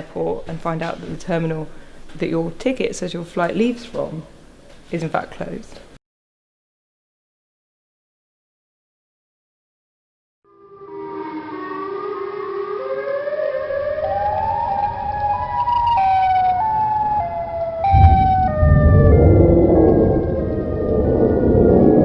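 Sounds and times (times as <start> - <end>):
siren-like electronic tones: 10.5 - 22.0
low rumble: 17.8 - 22.0.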